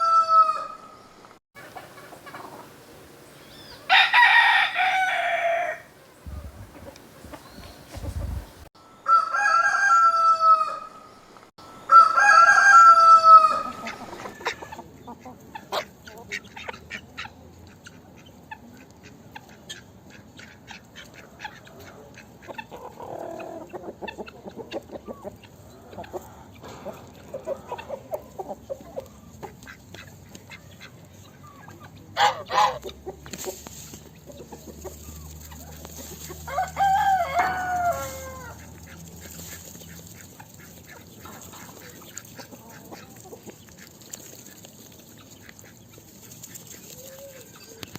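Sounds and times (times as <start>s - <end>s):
rooster crowing: 0.0s - 0.8s, 1.6s - 11.0s, 11.9s - 13.8s, 36.5s - 38.6s
chickens clucking: 1.6s - 8.7s, 13.3s - 47.9s.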